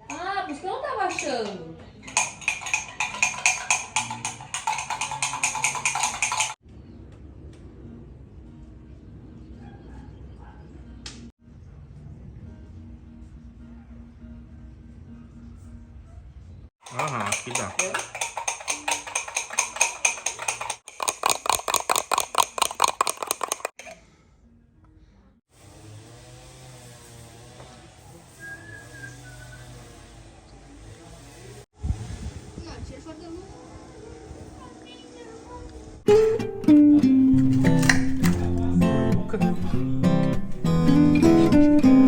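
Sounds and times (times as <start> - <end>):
music with clicking percussive beat: 1.1 - 6.6, 16.8 - 23.9.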